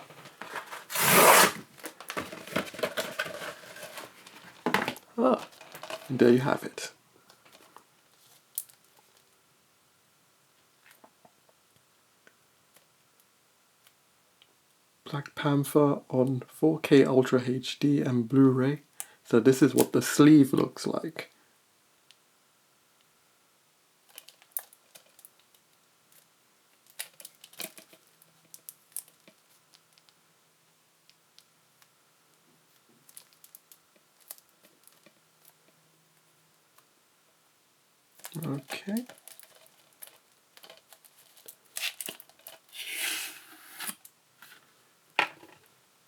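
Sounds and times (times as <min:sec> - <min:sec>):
card rubbing against plastic: 0:00.5 - 0:01.6, 0:42.7 - 0:44.0.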